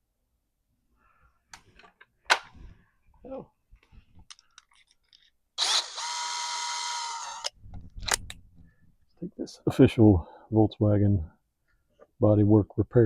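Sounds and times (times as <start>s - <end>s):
tools clicking and knocking: 4.2s - 5.4s
power drill spinning: 5.6s - 7.6s.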